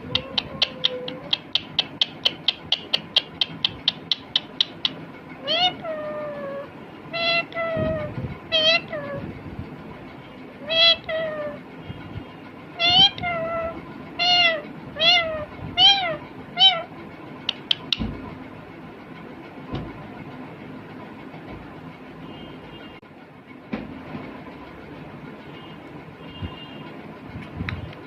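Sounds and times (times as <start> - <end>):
sharp clicks: 0.0 - 5.0, 17.5 - 18.0
parakeet calling: 0.0 - 9.2, 10.6 - 11.6, 12.8 - 16.9.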